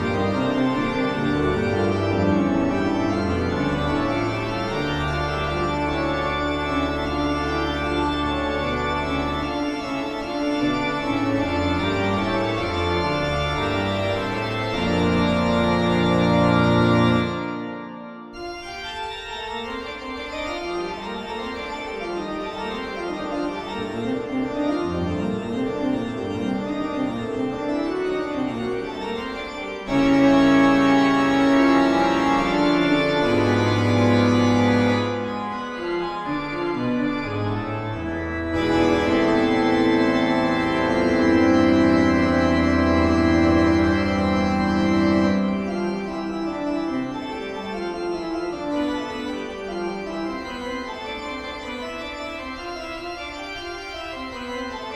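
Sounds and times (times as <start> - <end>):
eerie organ chords: 0.0 - 54.9.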